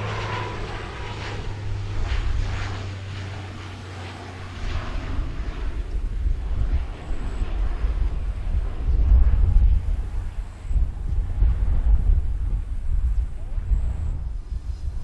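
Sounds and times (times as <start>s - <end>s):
airliner engines humming: 0.0s - 15.0s
deep engine rumble: 0.0s - 15.0s.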